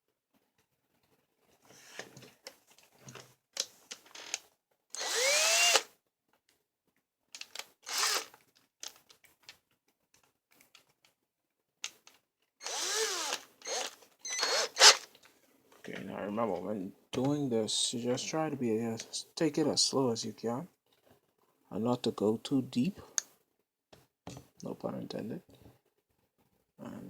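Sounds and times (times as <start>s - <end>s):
small power drill drilling: 4.2s - 5.9s, 7.8s - 8.3s, 12.6s - 15.1s.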